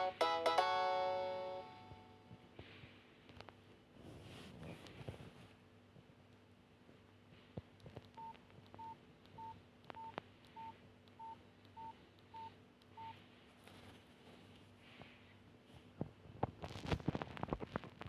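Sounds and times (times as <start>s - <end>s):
phone beeping faintly: 8.2s - 13.2s.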